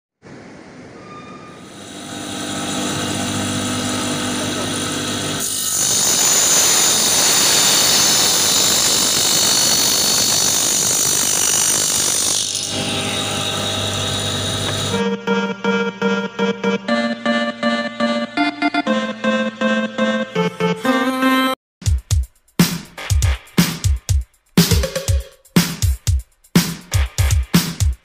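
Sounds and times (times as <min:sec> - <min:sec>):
saw cutting through wood: 0:01.6 - 0:15.0
table saw motor humming: 0:01.6 - 0:18.2.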